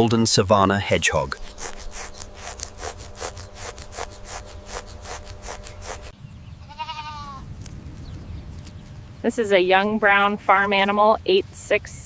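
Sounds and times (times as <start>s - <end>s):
rhythmic rasping: 0.8s - 6.2s
short wavering bleat: 6.6s - 7.4s.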